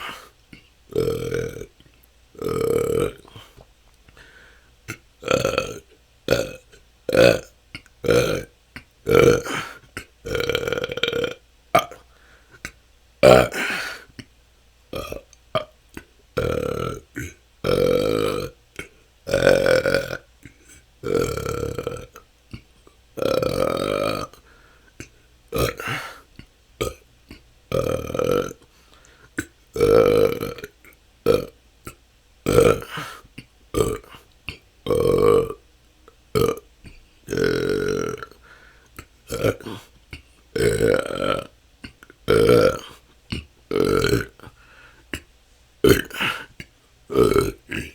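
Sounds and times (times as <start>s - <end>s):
person belching: 0.9s - 1.8s, 2.4s - 3.6s, 4.9s - 12.1s, 13.2s - 14.0s, 14.9s - 22.6s, 23.2s - 24.4s, 25.0s - 26.2s, 26.8s - 28.6s, 29.4s - 35.6s, 36.4s - 36.7s, 37.3s - 38.4s, 39.0s - 47.9s
person burping: 0.9s - 1.8s, 2.4s - 3.6s, 4.9s - 12.1s, 13.2s - 14.1s, 14.9s - 22.6s, 23.2s - 24.4s, 25.5s - 26.2s, 26.8s - 28.6s, 29.4s - 35.6s, 36.4s - 36.7s, 37.3s - 44.6s, 45.2s - 47.9s.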